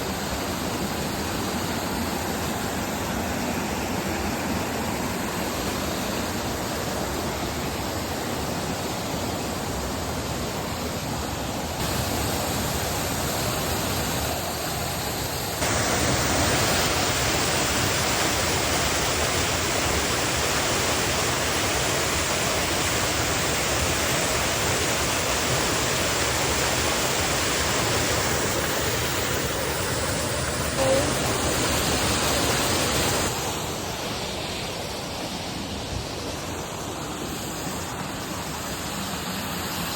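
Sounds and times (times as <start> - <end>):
waterfall rushing: 11.8 - 38.7.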